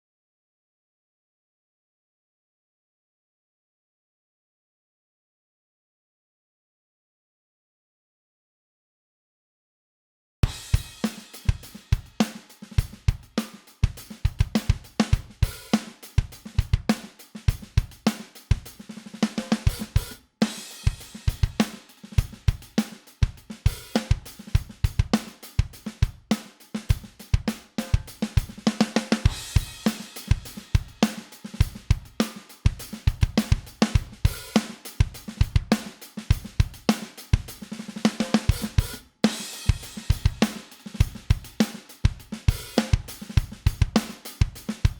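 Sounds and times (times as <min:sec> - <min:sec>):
drum kit groove: 0:10.4 - 0:44.9.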